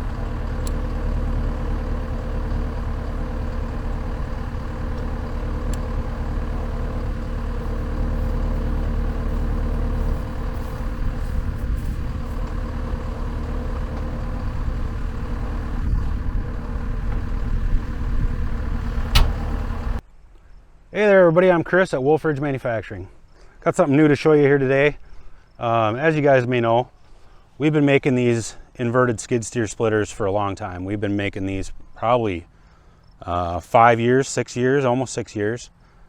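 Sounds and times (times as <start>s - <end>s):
loader engine running: 0.0s - 20.0s.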